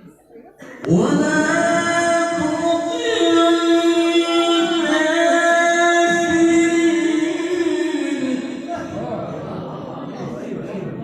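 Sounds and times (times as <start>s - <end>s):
man chanting melodic recitation: 0.8s - 9.4s.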